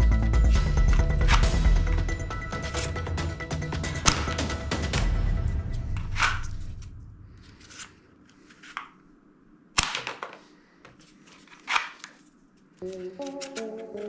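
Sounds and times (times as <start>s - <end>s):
background music: 0.0s - 7.0s, 12.8s - 14.0s
toy guns snapping: 9.8s - 10.4s.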